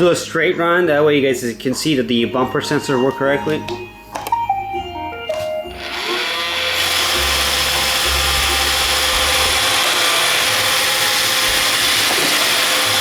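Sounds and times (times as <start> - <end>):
robot vacuum motors whining: 5.8 - 13.0.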